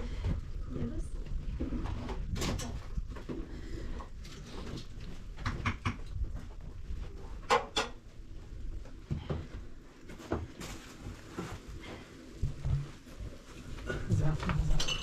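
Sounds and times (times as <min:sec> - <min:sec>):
objects knocking and clattering: 0:04.2 - 0:08.1, 0:13.8 - 0:15.0.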